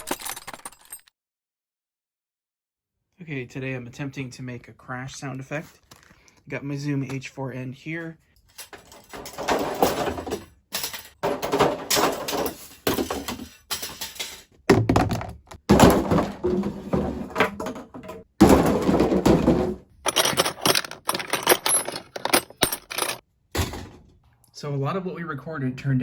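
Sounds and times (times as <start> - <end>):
junk clattering when dropped: 14.7 - 24.0.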